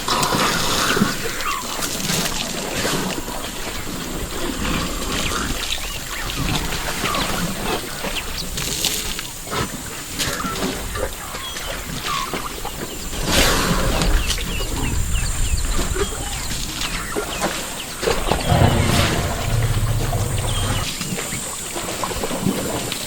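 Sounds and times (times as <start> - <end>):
steady low rumble: 18.4 - 21.0.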